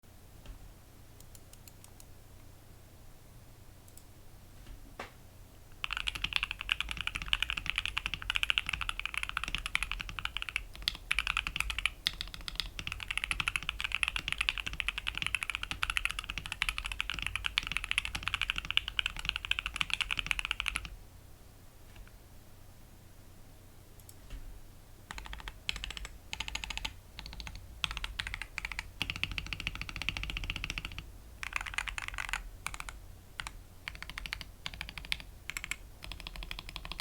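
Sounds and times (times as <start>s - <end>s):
fast typing on keyboard: 5.8s - 21.0s, 25.1s - 37.0s.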